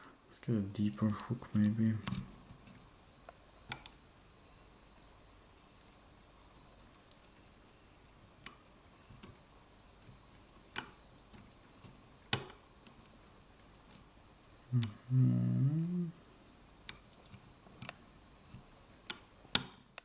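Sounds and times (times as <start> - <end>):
person humming: 14.7 - 16.2.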